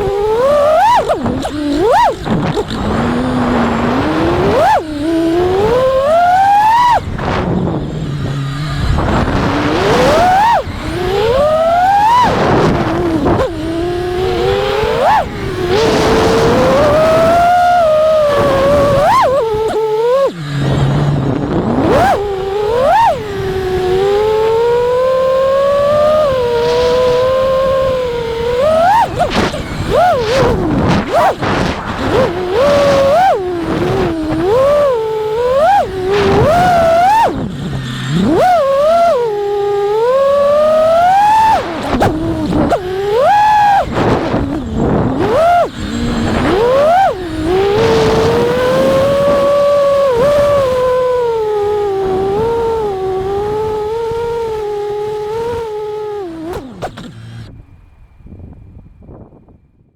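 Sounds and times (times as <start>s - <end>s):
quadcopter motors whining: 0.0s - 59.5s.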